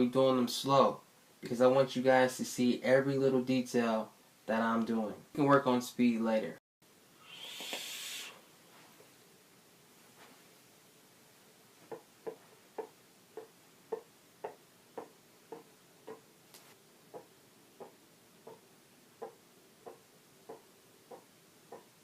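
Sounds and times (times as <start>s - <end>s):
breath hiss: 7.1s - 8.8s.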